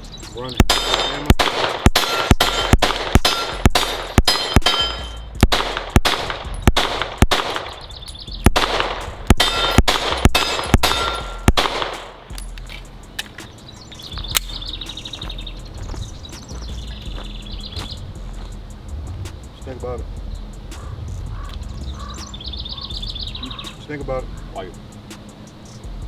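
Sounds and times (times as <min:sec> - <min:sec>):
steel targets ringing: 0:00.6 - 0:05.3, 0:09.4 - 0:11.8
pistol shots: 0:00.6 - 0:12.4.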